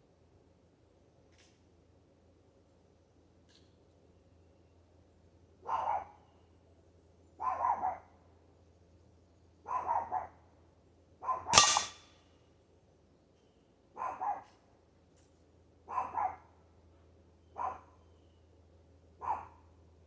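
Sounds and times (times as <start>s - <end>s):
dog barking: 5.7s - 6.1s, 7.4s - 8.1s, 9.7s - 10.4s, 11.2s - 11.5s, 14.0s - 14.5s, 15.9s - 16.5s, 17.6s - 17.8s, 19.2s - 19.6s
air rifle shot: 11.6s - 12.0s.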